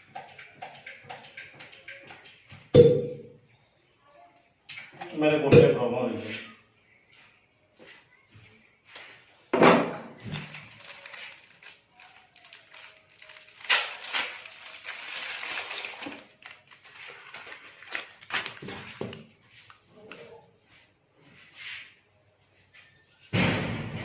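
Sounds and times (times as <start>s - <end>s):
rustling and shuffling: 6.2s - 9.5s, 10.2s - 23.3s.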